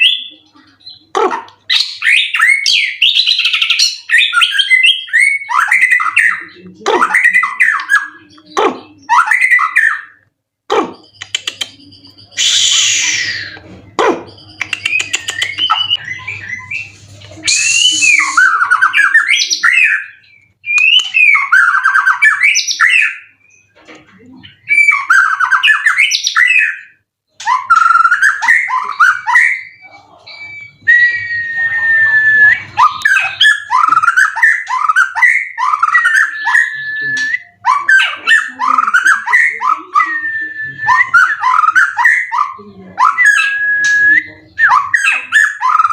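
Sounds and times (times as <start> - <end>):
songbird whistling phrases: 1.7 - 10.2, 10.9 - 23.7, 24.4 - 45.9
long level bird whistle: 12.4 - 13.6, 15.0 - 23.2.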